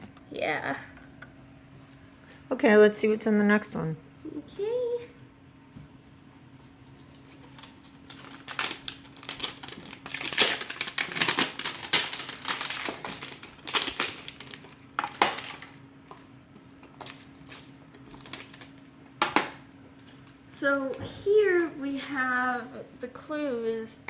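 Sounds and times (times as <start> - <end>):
packaging crinkling and rustling: 6.9 - 20.4
packaging clicks: 7.6 - 15.8.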